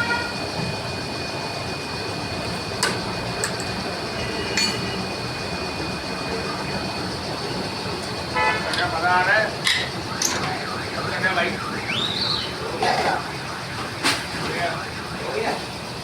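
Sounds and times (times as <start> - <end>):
machine running with high whine: 0.0 - 16.0
sharp metallic clinks: 4.5 - 5.0.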